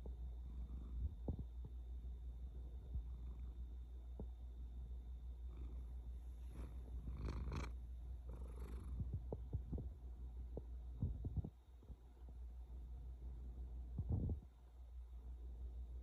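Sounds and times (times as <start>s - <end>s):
kitten purring: 0.4s - 1.7s, 5.4s - 10.0s, 13.8s - 14.5s.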